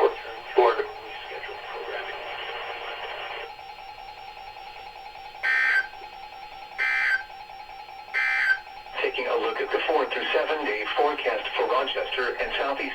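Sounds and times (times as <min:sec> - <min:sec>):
radio broadcast: 0:00.0 - 0:03.6, 0:08.2 - 0:12.9
radio hiss: 0:00.0 - 0:03.6, 0:08.9 - 0:12.9.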